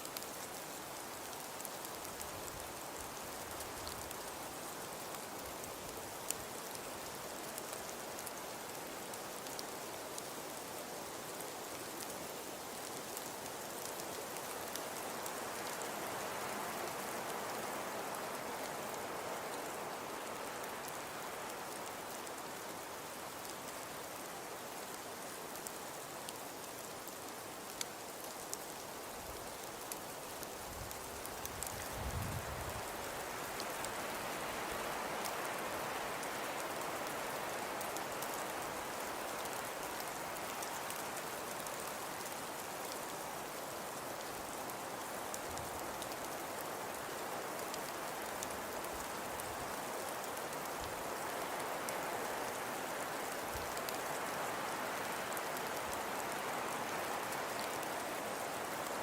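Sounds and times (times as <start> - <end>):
hiss of falling snow: 0.0 - 59.0
small ticks of snow landing: 0.0 - 59.0.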